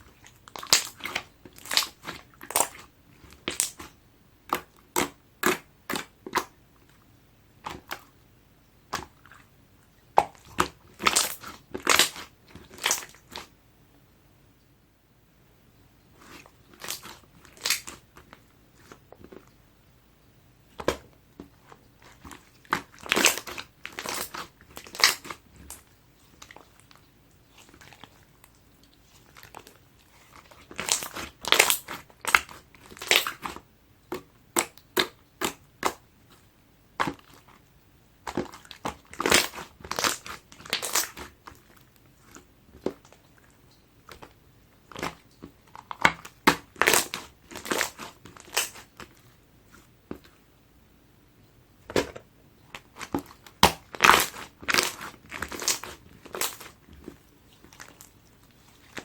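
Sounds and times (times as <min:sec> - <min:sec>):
slime crackling and popping: 0:00.5 - 0:03.9, 0:04.5 - 0:06.5, 0:10.2 - 0:13.5, 0:16.2 - 0:19.4, 0:22.0 - 0:36.0, 0:38.2 - 0:43.2, 0:44.1 - 0:49.2, 0:51.9 - 0:59.0.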